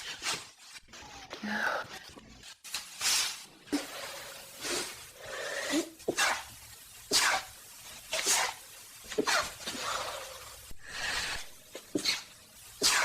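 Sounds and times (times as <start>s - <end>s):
person sneezing: 5.6s - 6.5s, 7.1s - 7.5s, 9.2s - 10.0s, 11.9s - 13.0s.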